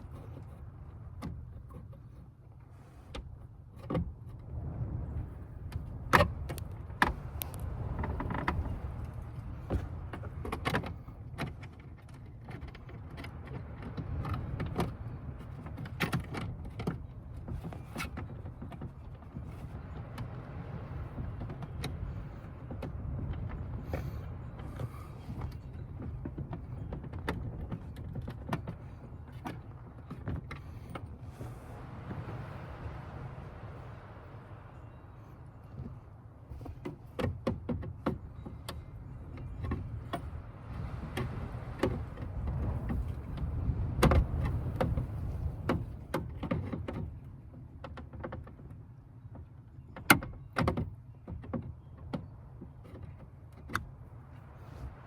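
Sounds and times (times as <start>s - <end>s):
steady low rumble: 4.1s - 11.3s.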